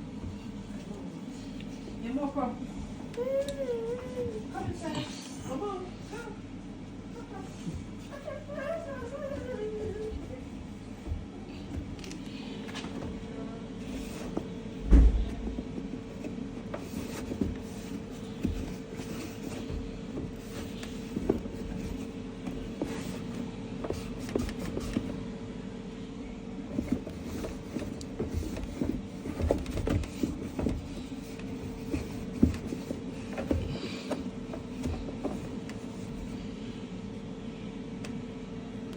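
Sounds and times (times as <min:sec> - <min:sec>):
washing machine hum: 0:00.0 - 0:38.9
washing machine knocks and clunks: 0:14.4 - 0:21.6.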